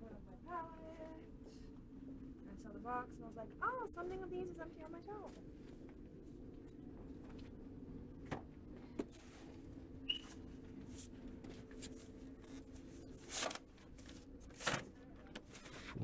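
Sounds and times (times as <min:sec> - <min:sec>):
low hum: 0:15.7 - 0:16.0.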